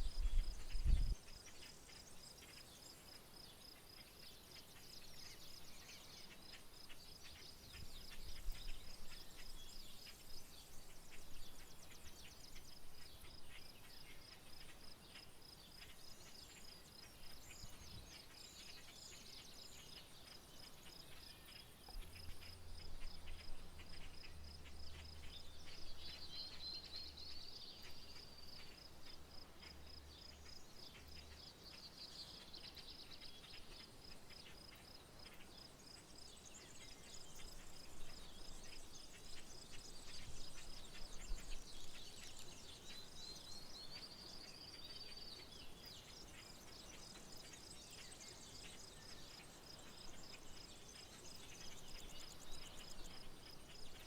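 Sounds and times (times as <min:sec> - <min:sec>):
bird chirps: 0:00.0 - 0:54.0.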